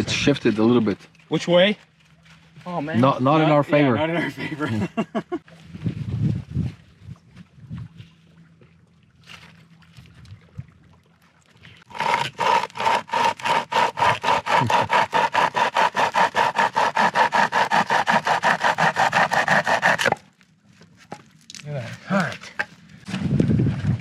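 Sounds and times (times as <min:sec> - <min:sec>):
hand saw cutting wood: 0:11.9 - 0:20.3.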